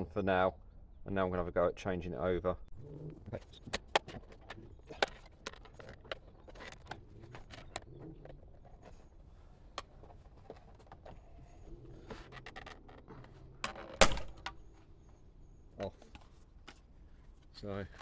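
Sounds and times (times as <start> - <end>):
plastic clicks and scraping: 3.0 - 15.2, 15.8 - 18.0.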